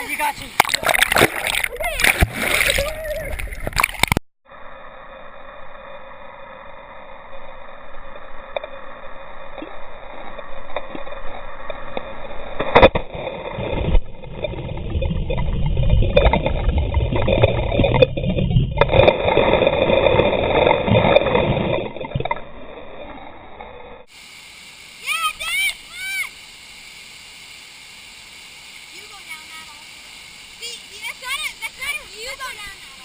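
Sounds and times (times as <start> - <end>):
sharp knock or splash: 0.6 - 2.7
waterfall rushing: 24.3 - 26.8.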